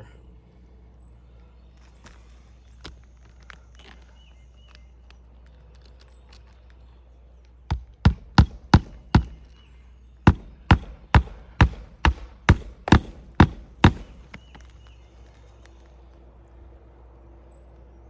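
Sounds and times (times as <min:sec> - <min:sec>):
handling taps and clicks: 0:07.7 - 0:09.5, 0:10.3 - 0:14.8
hammer blows on nails: 0:07.7 - 0:09.6, 0:10.2 - 0:14.7.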